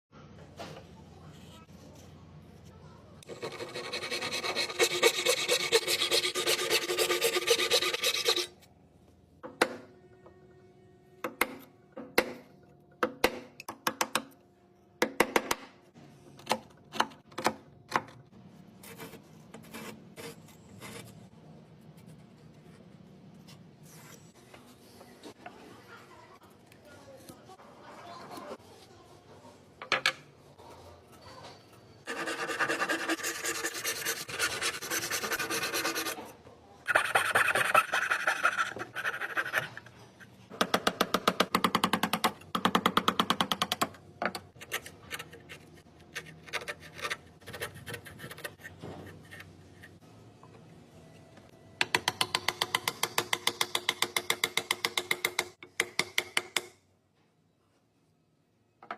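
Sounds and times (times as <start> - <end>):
hand tool scraping wood: 3.3 - 8.5.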